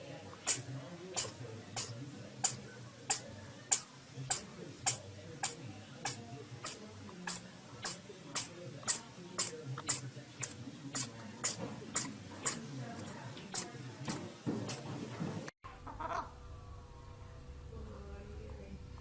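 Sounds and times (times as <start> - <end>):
animal sneezing: 0.4 - 14.8.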